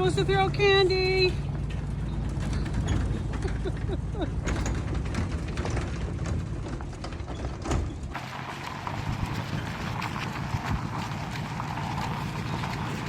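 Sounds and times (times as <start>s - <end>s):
rattling and clicking: 0.0s - 13.0s
truck engine running low: 0.0s - 13.0s
short squeaks: 1.5s - 5.1s.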